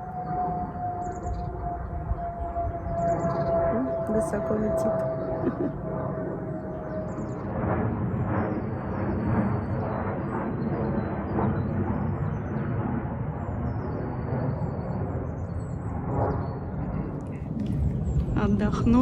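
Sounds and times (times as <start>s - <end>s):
airplane rumble overhead: 0.0s - 19.0s.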